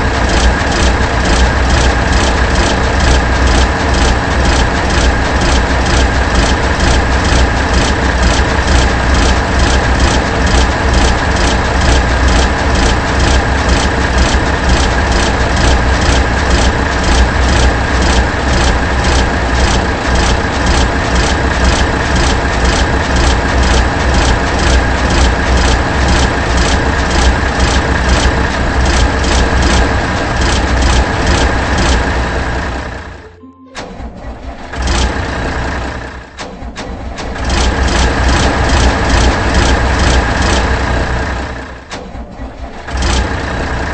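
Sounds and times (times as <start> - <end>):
repeating ticks: 0.0 - 32.1
machine rumbling: 0.0 - 43.9.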